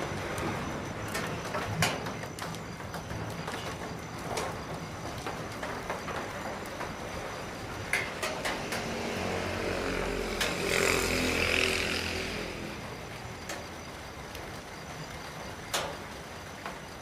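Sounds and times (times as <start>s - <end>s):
rain hiss: 0.0s - 17.0s
vehicle engine passing: 8.3s - 13.2s.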